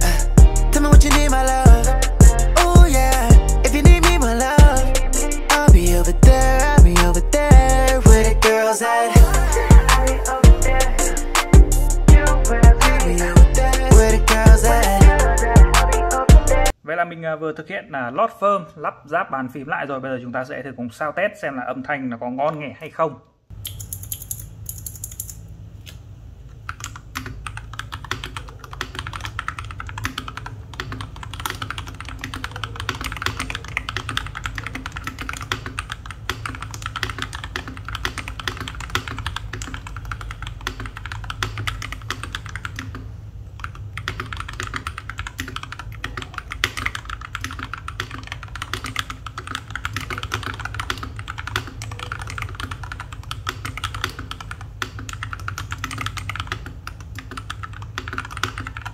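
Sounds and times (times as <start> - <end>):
mechanical keyboard typing: 26.7 - 58.9.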